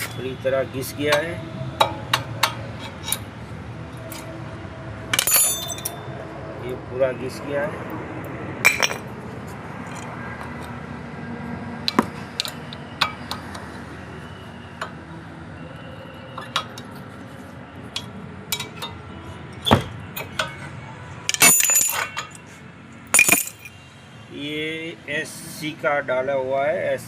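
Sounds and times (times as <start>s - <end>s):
metal clinks and taps: 5.1s - 6.0s, 8.6s - 9.1s, 17.9s - 19.0s, 21.3s - 22.4s, 23.1s - 23.8s.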